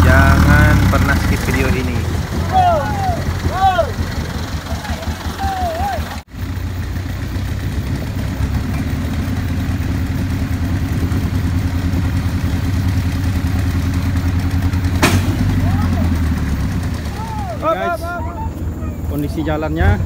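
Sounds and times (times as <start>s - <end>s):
truck engine running: 0.0s - 20.0s.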